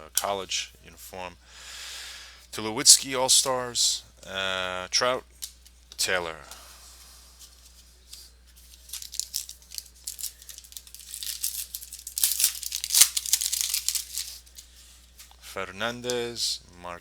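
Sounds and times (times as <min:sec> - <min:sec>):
card pack wrapper tearing: 0:08.6 - 0:14.7.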